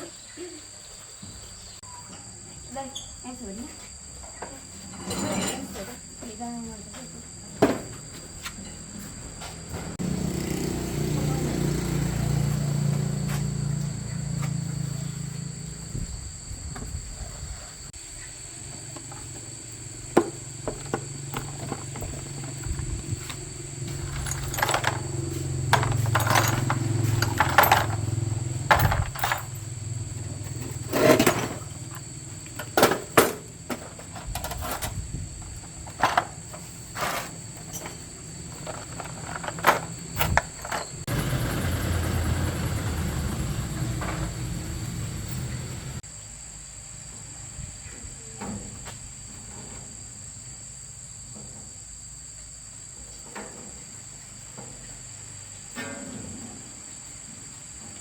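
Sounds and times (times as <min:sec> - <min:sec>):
insects chirring: 0:00.0 - 0:58.0
sharp knocks and clanks: 0:20.1 - 0:34.9, 0:38.6 - 0:46.0
low engine-like hum: 0:40.7 - 0:46.0.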